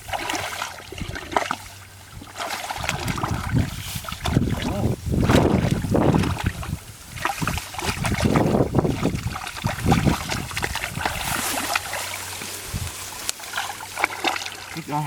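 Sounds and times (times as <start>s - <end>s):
wind rumbling on microphone: 0.0s - 14.1s
muddy water splashing: 0.0s - 15.0s
small wet clicks and crackles: 5.7s - 15.0s.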